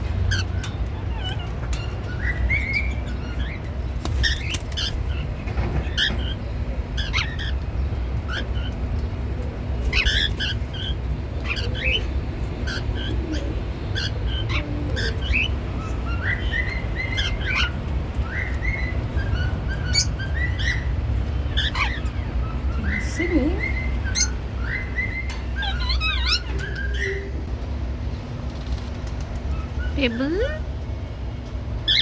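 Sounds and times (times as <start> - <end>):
cockatiels chirping: 0.3 - 5.2, 7.0 - 9.0, 9.8 - 27.4.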